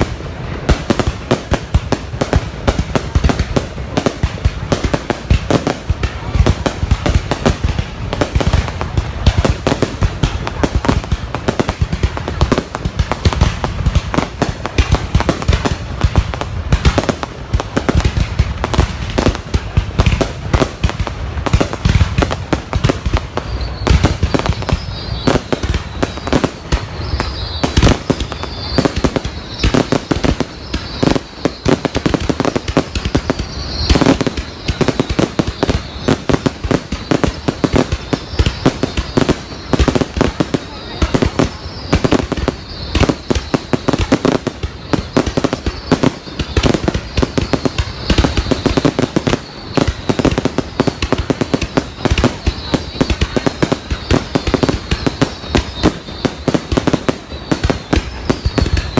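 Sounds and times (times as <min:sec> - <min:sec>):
fireworks bangs and crackles: 0:00.0 - 0:58.9
faint wavering high whistle: 0:23.3 - 0:58.9.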